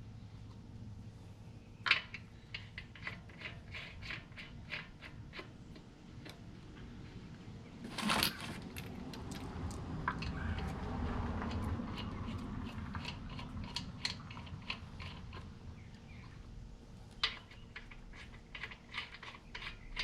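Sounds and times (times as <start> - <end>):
metal rattling scrape: 2.6 - 5.6, 7.8 - 9.0, 10.0 - 15.5, 17.2 - 20.0
metal parts clinking: 7.8 - 8.9.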